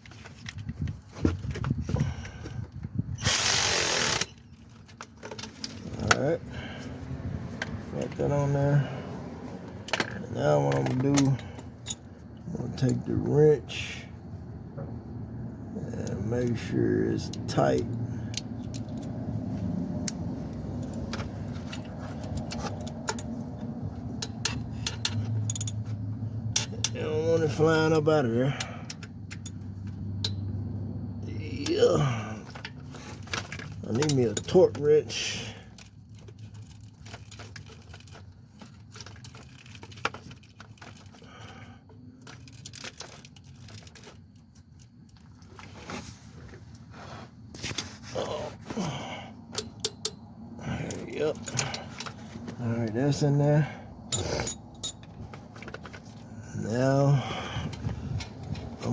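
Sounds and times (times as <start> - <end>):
hand tools clicking and clinking: 0.0 - 13.1, 16.0 - 30.6, 31.2 - 46.0, 47.6 - 58.9
wrench clicking on bolt: 24.2 - 25.8, 26.6 - 27.0, 49.5 - 50.2.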